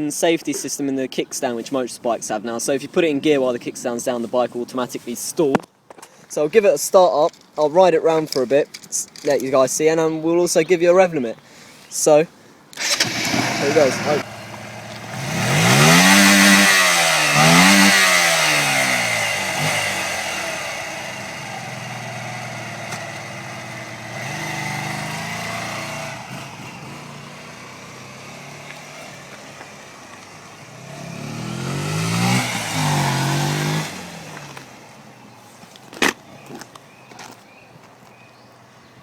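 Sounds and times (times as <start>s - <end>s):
motorcycle engine revving: 12.8s - 35.2s.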